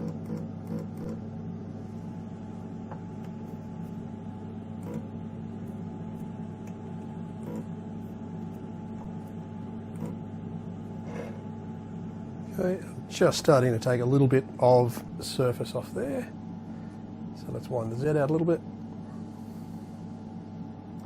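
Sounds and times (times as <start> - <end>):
lathe humming: 0.0 - 20.4.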